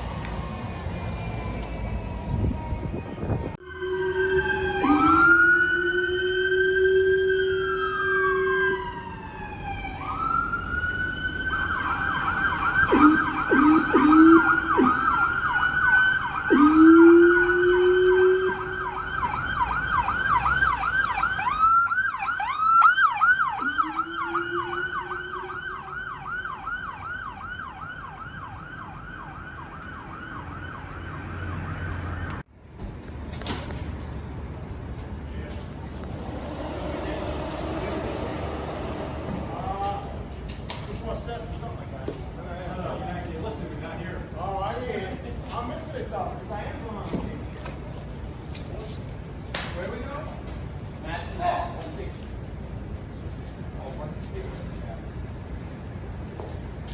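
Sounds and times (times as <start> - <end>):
fire truck siren: 0.0 - 32.4, 36.0 - 41.6
street traffic noise: 0.0 - 56.9
air horn blasts: 3.6 - 9.1, 16.5 - 19.8, 23.4 - 26.0, 36.2 - 39.7.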